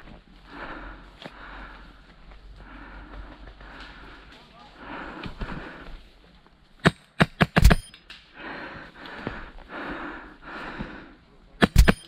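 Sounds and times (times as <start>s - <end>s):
heavy breathing: 0.0s - 6.2s, 8.2s - 11.4s
airsoft gun shots: 6.8s - 7.9s, 11.6s - 12.0s.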